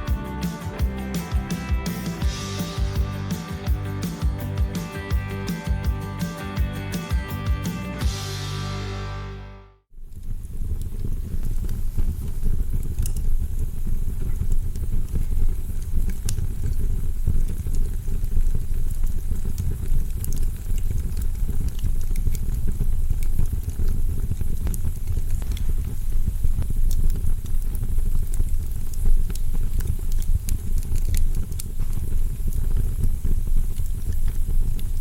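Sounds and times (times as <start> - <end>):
log fire crackling: 10.1 - 35.0.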